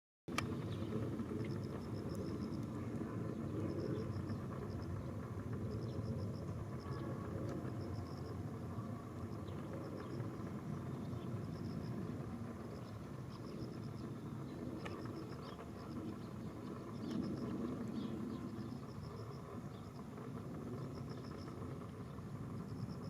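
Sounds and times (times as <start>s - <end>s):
low outdoor rumble: 0.3s - 23.0s
insect chirping trills: 0.8s - 23.0s.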